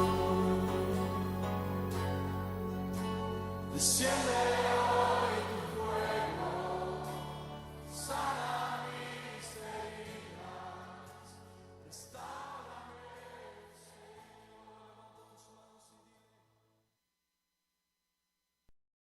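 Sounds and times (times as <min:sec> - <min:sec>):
worship music with singing: 0:00.0 - 0:16.3.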